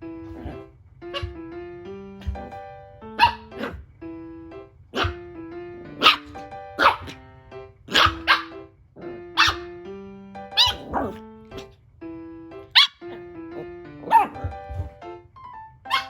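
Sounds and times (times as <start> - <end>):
background music: 0.0 - 16.0
dog barking: 1.1 - 1.4, 3.2 - 3.8, 4.9 - 5.2, 6.0 - 7.2, 7.9 - 8.6, 9.3 - 9.7, 10.6 - 11.7, 12.7 - 15.0.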